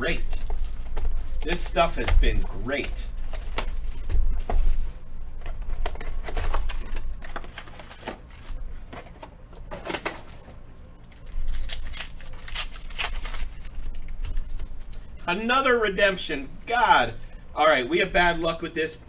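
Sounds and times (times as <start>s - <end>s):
low steady hum: 0.0s - 19.0s
trading cards clicking and rustling: 0.2s - 4.7s, 5.4s - 15.1s.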